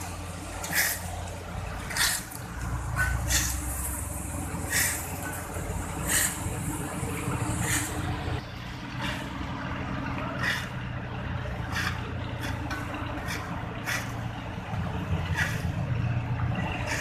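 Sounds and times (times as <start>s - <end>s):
truck engines running: 0.0s - 17.0s
short hisses: 4.7s - 5.0s.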